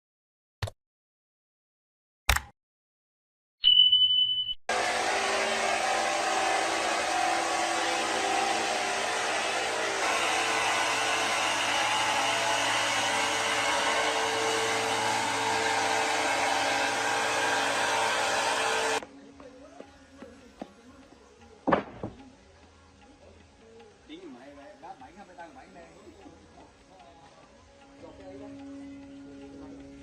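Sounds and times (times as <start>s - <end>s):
motor-driven machine whirring: 4.7s - 19.0s.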